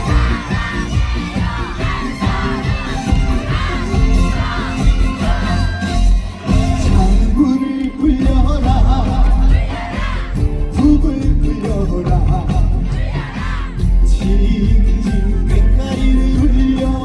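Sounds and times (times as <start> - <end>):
crowd cheering: 0.0 - 14.7
live band music: 0.0 - 17.0.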